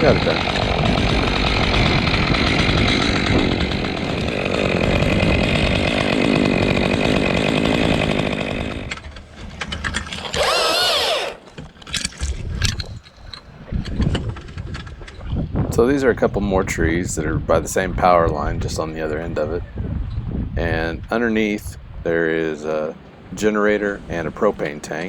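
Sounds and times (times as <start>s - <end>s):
chainsaw cutting branches: 0.0s - 14.7s.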